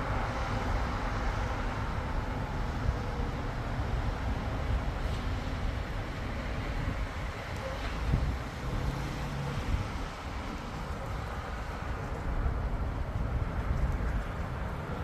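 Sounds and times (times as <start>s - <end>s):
street traffic: 0.0s - 15.0s
wind buffeting microphone: 3.4s - 15.0s.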